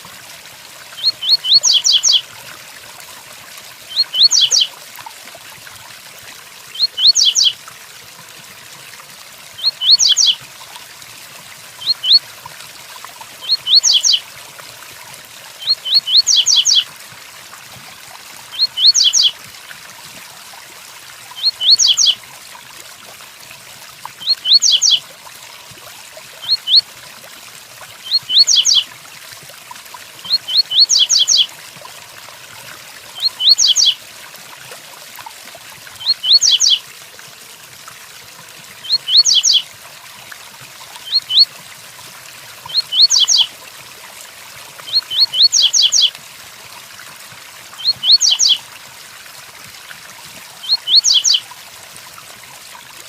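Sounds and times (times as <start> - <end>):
bird singing high slurred notes: 1.0 - 2.2, 3.9 - 4.7, 6.8 - 7.5, 13.4 - 14.2, 24.4 - 25.0, 28.1 - 28.8, 33.2 - 34.0, 36.0 - 36.8, 38.8 - 39.6, 42.7 - 43.5, 44.9 - 46.1, 47.8 - 48.6, 50.6 - 51.4.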